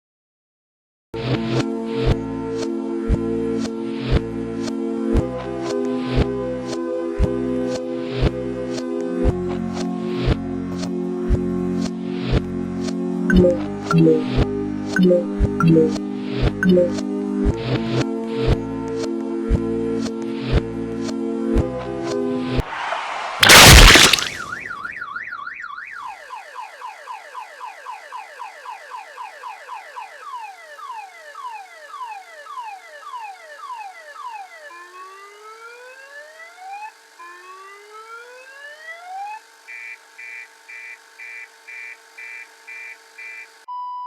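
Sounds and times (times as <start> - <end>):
car alarm cycling tones: 39.7 - 43.7.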